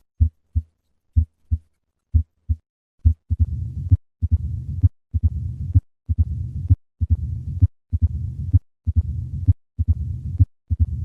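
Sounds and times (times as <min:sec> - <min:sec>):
heartbeat: 0:00.2 - 0:11.0
low rumbling heart murmur: 0:03.0 - 0:11.0.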